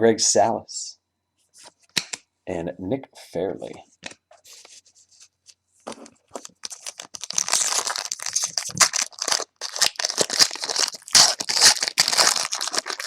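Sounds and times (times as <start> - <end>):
foil wrapper crinkling and tearing: 5.9 - 13.0.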